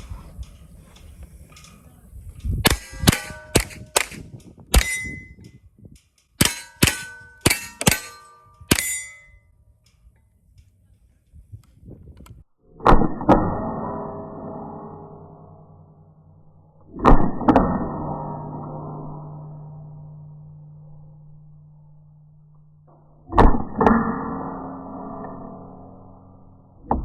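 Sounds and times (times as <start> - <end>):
rifle shots: 2.7 - 5.4, 6.4 - 9.3
steel plate ringing: 2.7 - 5.5, 6.4 - 9.4
loud knock with long ring: 6.4 - 9.3.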